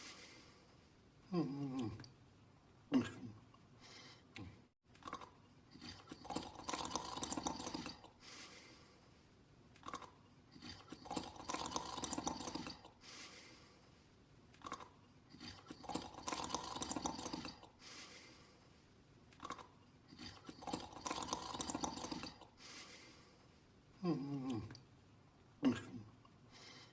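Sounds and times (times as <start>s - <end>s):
rasping snoring: 10.6s - 12.9s, 14.6s - 17.7s.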